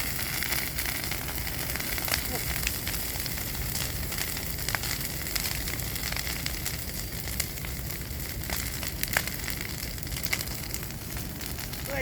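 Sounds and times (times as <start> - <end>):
bonfire hissing: 0.0 - 12.0
crackling wood pops: 0.0 - 12.0.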